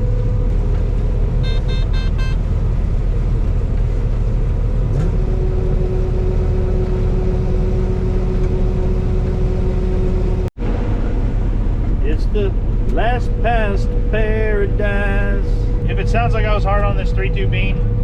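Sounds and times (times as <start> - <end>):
combine harvester drone in cab: 0.0 - 18.0
steady hum tone: 1.2 - 18.0
short electronic beeps: 1.4 - 2.4.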